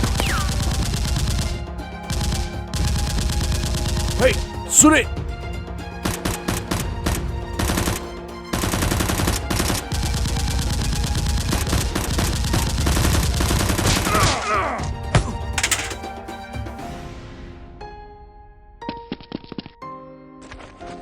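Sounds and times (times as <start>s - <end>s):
gunshots: 0.0s - 4.4s, 8.6s - 14.4s
background music: 0.0s - 21.0s.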